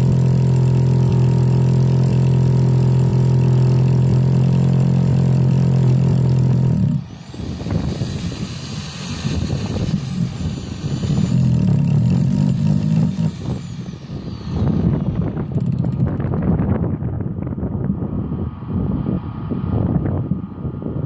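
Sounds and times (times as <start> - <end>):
rotary hammer drilling into rock: 0.0 - 16.6.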